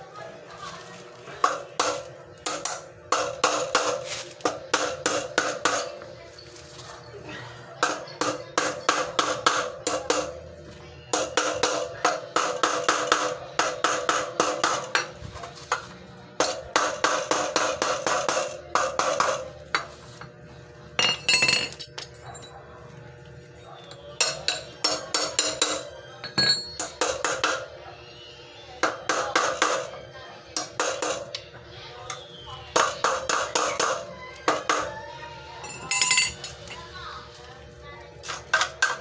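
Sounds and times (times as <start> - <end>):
hammer striking steel hub: 24.2 - 27.7.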